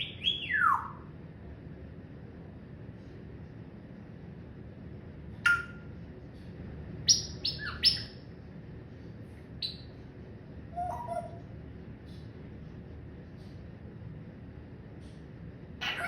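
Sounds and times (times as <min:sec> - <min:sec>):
parrot high calls: 0:00.0 - 0:01.0, 0:05.4 - 0:05.9, 0:10.7 - 0:11.4, 0:15.8 - 0:16.0.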